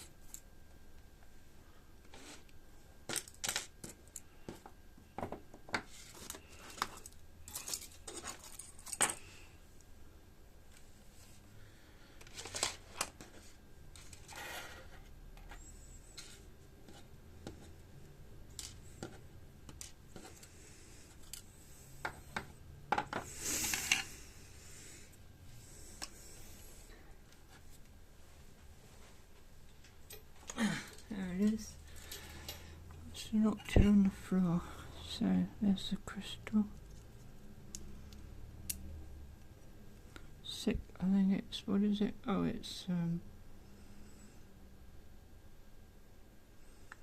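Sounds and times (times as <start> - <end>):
small parts clicking and clinking: 3.0 - 4.7, 5.8 - 9.3, 18.4 - 20.5, 21.1 - 24.1.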